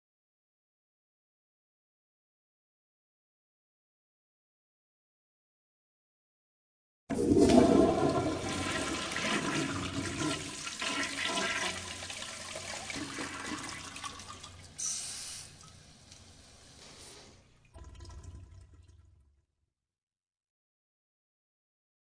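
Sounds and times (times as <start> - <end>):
toilet flushing: 7.1 - 19.2
brief hiss: 14.8 - 15.6, 16.8 - 17.4.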